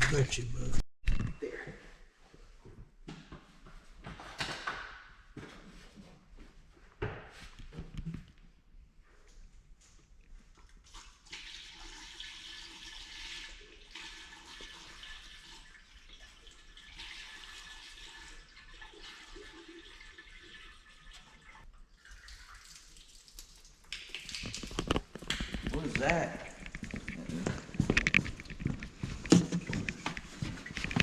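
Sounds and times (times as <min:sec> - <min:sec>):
liquid pouring into radiator: 0:10.8 - 0:26.6.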